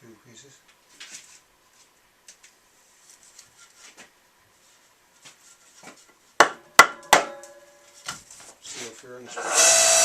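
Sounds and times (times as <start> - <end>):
wood handling and rubbing: 0.8 - 6.5
sharp knocks on wood: 6.4 - 7.4.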